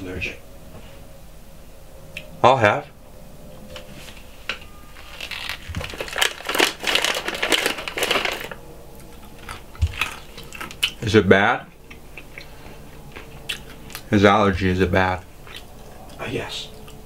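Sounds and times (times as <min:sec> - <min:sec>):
snack packet crinkling: 0:05.0 - 0:11.0.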